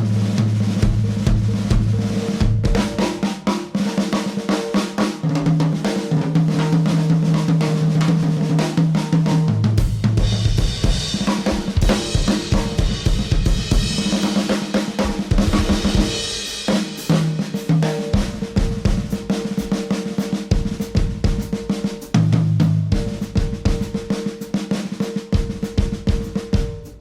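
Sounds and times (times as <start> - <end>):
drum kit busy rhythm: 0.0 - 27.0
live band playing: 9.8 - 22.2.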